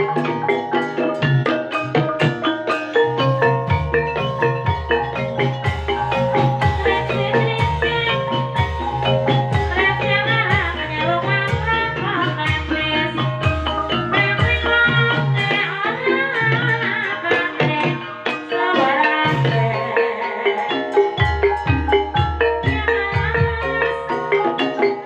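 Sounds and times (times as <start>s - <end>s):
gamelan ringing struck notes: 0.0s - 25.0s
deep drum beat: 1.2s - 15.6s, 21.2s - 24.2s.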